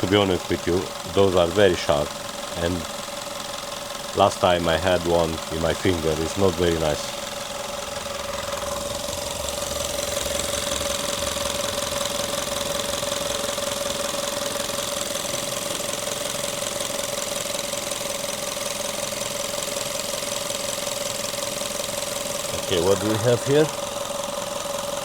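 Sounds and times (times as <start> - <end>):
steady whine: 0.0 - 15.7, 22.5 - 24.1
car engine idling: 0.0 - 25.0.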